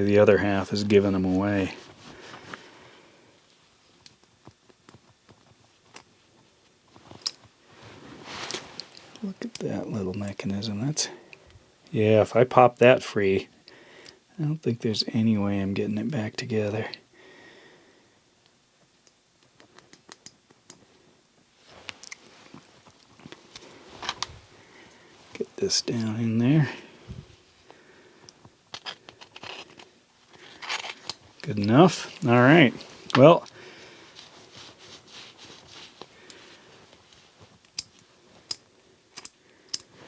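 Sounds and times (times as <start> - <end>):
faint rubbing and scraping: 0.0 - 3.6, 6.2 - 9.9, 28.7 - 38.5
small metal parts clicking: 37.6 - 39.9.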